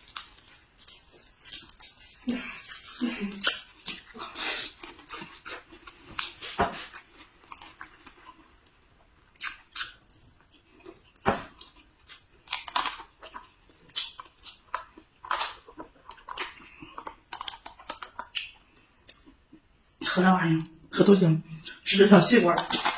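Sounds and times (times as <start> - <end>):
person chewing and biting food: 0.0 - 19.6.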